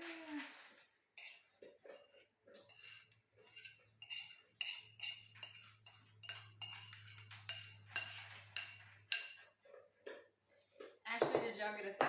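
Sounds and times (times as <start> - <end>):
spoon clinking against a dish: 1.2 - 9.6.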